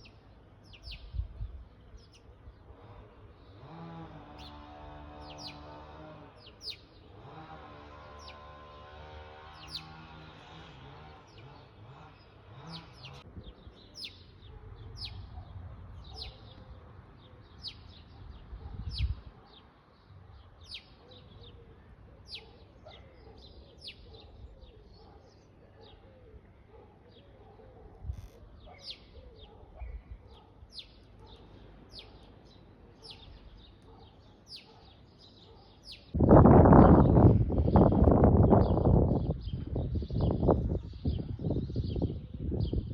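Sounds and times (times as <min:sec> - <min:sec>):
small songbird chirping: 0:17.4 - 0:21.6, 0:28.0 - 0:36.2.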